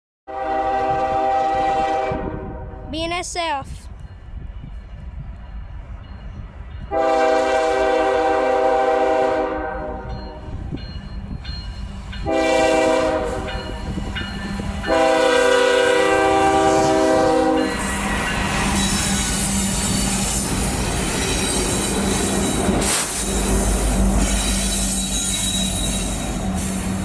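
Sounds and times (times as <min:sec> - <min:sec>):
locomotive air horn blasts: 0:00.3 - 0:02.9, 0:06.9 - 0:10.5, 0:12.2 - 0:13.8, 0:14.8 - 0:17.8
low rumble of train: 0:00.3 - 0:27.0.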